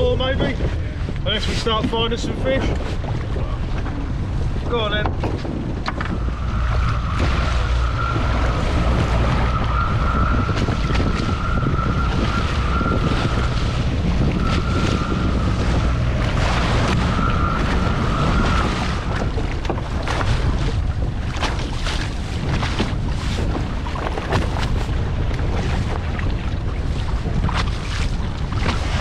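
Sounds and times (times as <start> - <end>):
wind buffeting microphone: 0.0 - 29.0
outboard motor running: 0.5 - 29.0.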